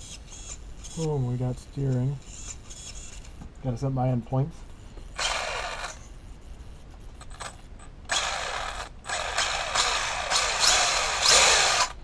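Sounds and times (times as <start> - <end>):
toy car electric motor whirring: 0.0 - 1.1, 2.2 - 3.3, 5.1 - 6.0, 7.3 - 12.0.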